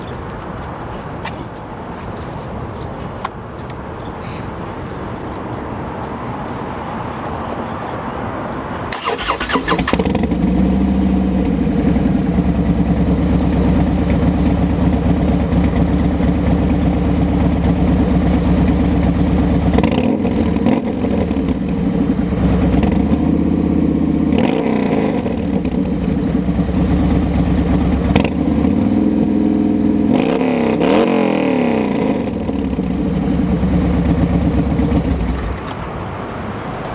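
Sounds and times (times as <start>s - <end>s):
motorcycle throttle blips: 8.9s - 36.0s
motorcycle engine idling: 9.1s - 24.3s, 25.2s - 30.1s, 32.2s - 35.6s.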